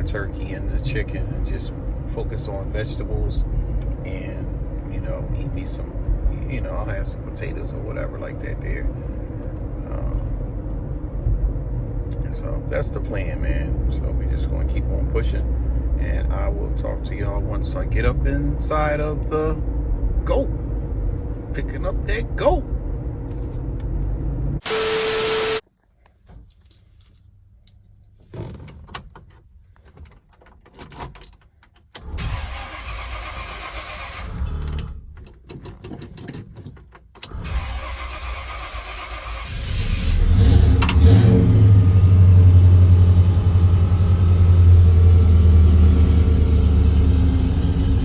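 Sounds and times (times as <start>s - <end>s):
car engine starting and idling: 0.0s - 25.6s, 31.9s - 35.8s, 37.2s - 48.0s
keys jangling: 30.3s - 31.8s.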